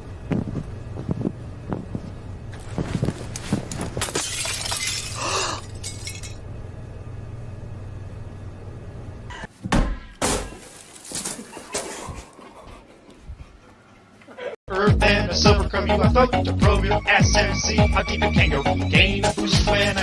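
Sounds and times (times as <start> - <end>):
low hum: 0.0 - 9.5
crash with shattering: 4.0 - 6.4.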